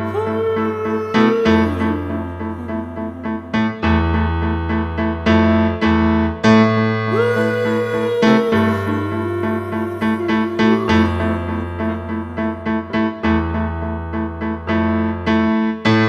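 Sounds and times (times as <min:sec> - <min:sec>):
sliding melody line: 0:00.0 - 0:04.2, 0:07.1 - 0:13.0
sustained bass line: 0:00.0 - 0:14.6
keyboard piano chords: 0:00.0 - 0:16.0.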